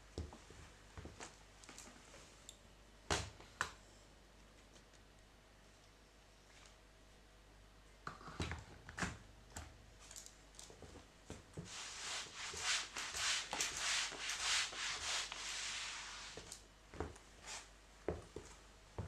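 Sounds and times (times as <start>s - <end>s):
mop scrubbing hard floor: 11.6s - 17.7s.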